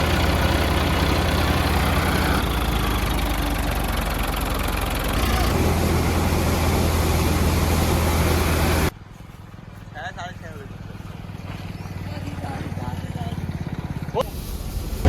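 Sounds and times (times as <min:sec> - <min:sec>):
heavy diesel engine rumbling: 0:00.0 - 0:08.9.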